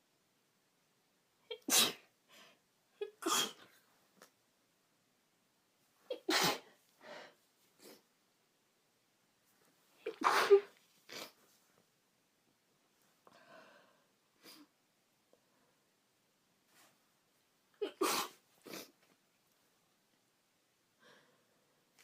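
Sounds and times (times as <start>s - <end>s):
woman sneezing: 1.5s - 2.1s, 3.0s - 3.7s, 6.1s - 6.7s, 10.0s - 11.4s, 17.8s - 18.9s
woman sniffling: 10.1s - 11.4s.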